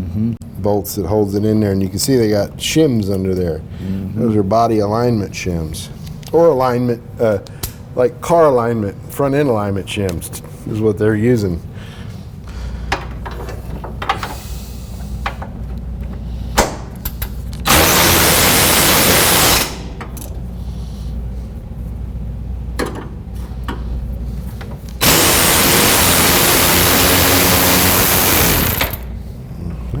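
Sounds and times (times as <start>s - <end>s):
power tool hissing: 17.6s - 20.0s, 25.0s - 29.1s.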